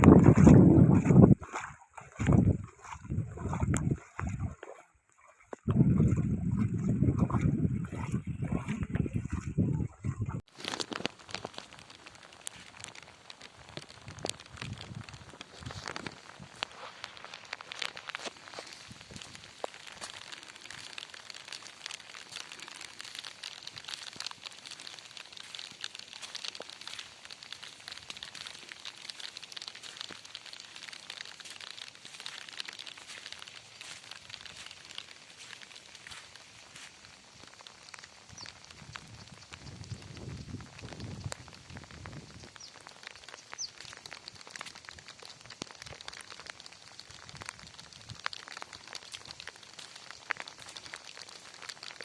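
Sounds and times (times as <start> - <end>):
rain pattering: 0.0 - 52.0.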